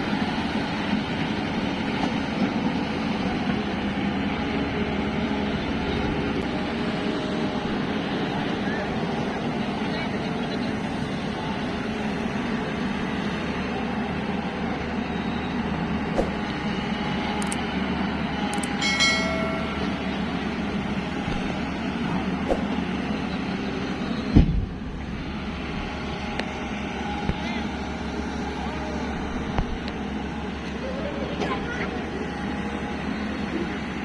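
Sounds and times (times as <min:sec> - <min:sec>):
excavator engine and hydraulics: 0:00.0 - 0:34.0
sharp thump: 0:16.2 - 0:16.4, 0:24.3 - 0:24.8
high-pitched tone: 0:18.6 - 0:20.2.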